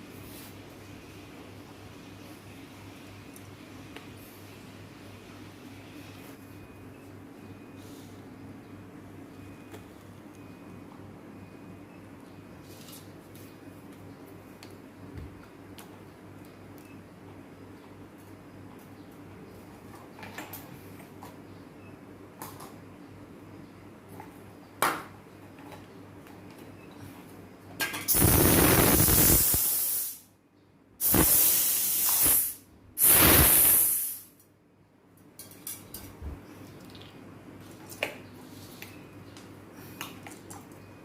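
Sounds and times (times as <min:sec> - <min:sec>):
pressurised gas hissing: 0:28.1 - 0:30.3, 0:31.0 - 0:34.3.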